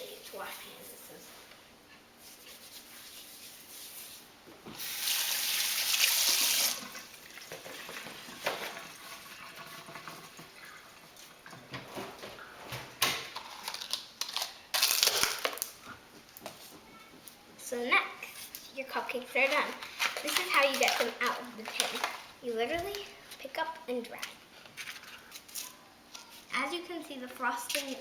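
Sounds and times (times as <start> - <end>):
tap water gushing into sink: 4.8 - 11.9
splashing and handling: 19.4 - 23.0.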